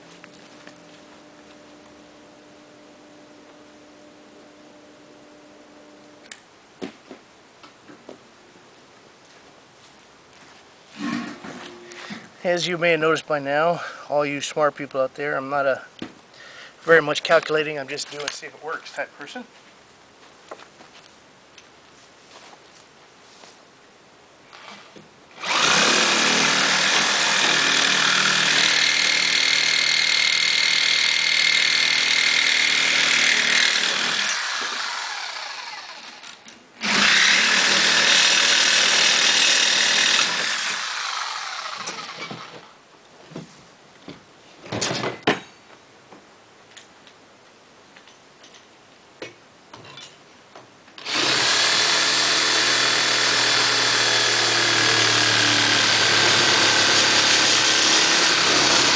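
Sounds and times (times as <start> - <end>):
reciprocating saw cutting: 25.4 - 42.7, 51.0 - 58.9.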